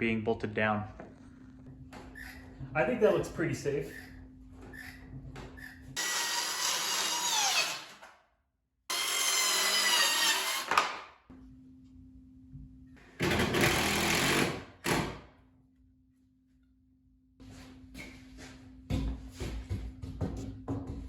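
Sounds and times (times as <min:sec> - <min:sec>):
power tool motor: 0:06.0 - 0:08.0, 0:08.9 - 0:10.9, 0:13.2 - 0:15.0.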